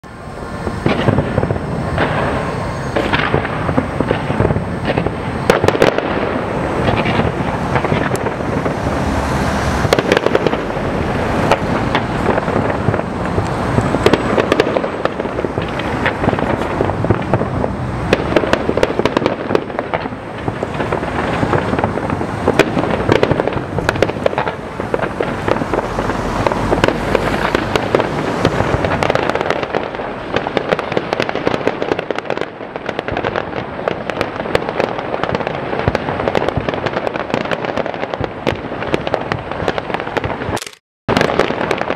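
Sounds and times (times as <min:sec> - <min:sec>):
fireworks bursting and crackling: 0:00.0 - 0:41.9.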